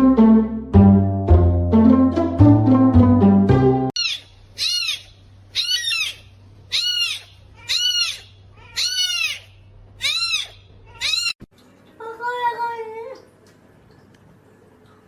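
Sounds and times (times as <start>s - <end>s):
animal high-pitched cries: 4.0s - 11.5s.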